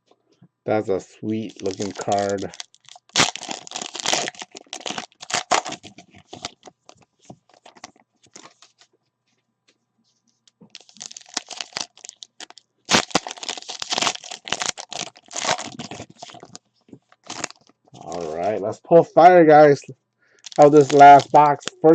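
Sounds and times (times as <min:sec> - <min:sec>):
foil wrappers crinkling and tearing: 0:01.3 - 0:08.9, 0:10.7 - 0:18.6, 0:20.4 - 0:21.9
cards being handled: 0:01.4 - 0:03.0, 0:20.5 - 0:21.9.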